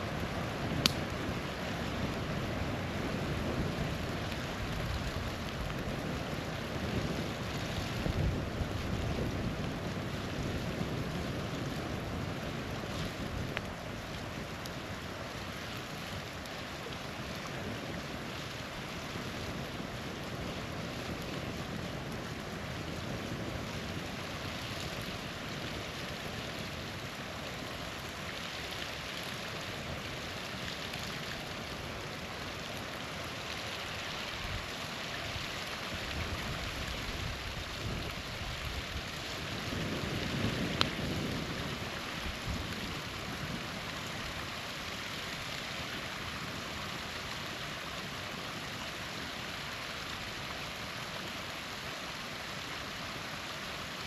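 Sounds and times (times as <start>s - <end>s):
campfire pop: 0.7s - 1.2s.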